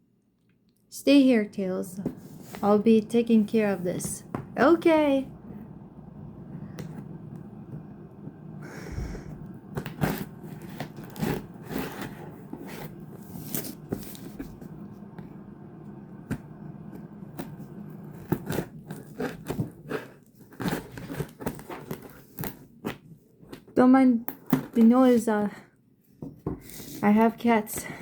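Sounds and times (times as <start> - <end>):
packaging tearing and crinkling: 18.0 - 22.8.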